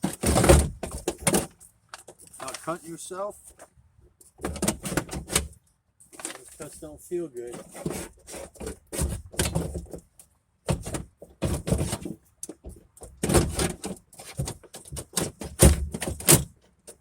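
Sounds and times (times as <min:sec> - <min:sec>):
metal clunks and rattles: 0:00.0 - 0:02.4, 0:04.4 - 0:05.5, 0:07.6 - 0:17.0.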